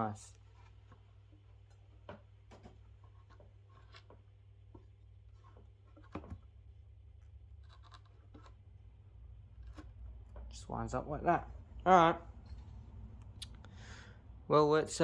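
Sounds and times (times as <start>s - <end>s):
low steady hum: 0.0s - 15.0s
scrapes and clicks of handling parts: 0.3s - 6.5s, 7.2s - 8.8s.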